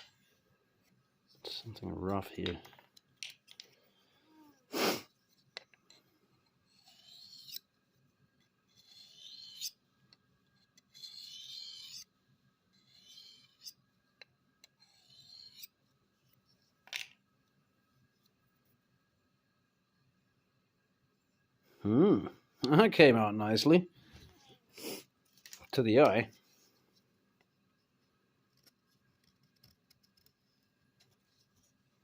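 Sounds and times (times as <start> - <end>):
knife rubbing on wooden strop: 4.8 - 7.7, 8.7 - 9.8, 10.7 - 12.1, 12.8 - 13.8, 14.8 - 15.8.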